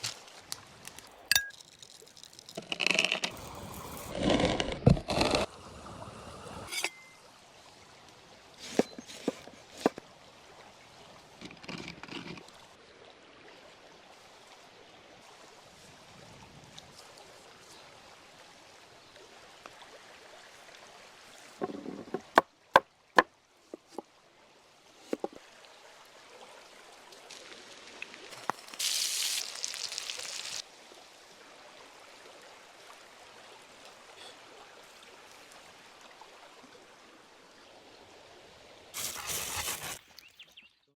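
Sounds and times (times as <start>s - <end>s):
trickle of running water: 0.0s - 4.2s, 5.6s - 22.4s, 23.6s - 40.7s
handling knocks and scrapes: 8.6s - 10.0s, 21.5s - 22.4s, 23.8s - 24.0s, 25.0s - 25.4s.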